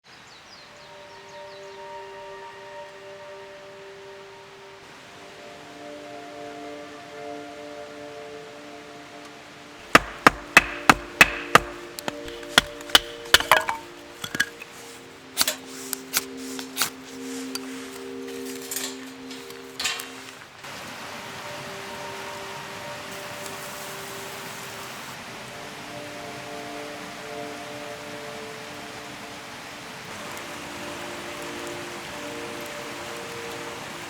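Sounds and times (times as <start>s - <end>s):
soft background music: 0.6s - 34.0s
firewood being chopped: 9.8s - 17.0s.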